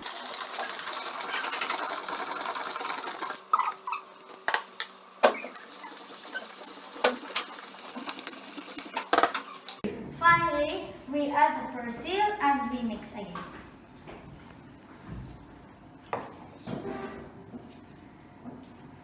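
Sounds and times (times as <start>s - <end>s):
spoon scraping in bowl: 5.3s - 9.8s.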